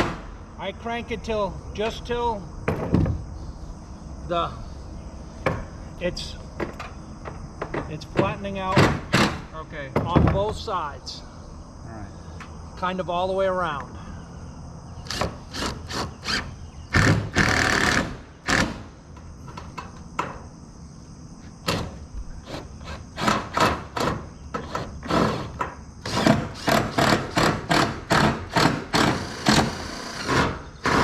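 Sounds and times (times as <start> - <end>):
drill driving screws into metal: 22.5 - 31.0.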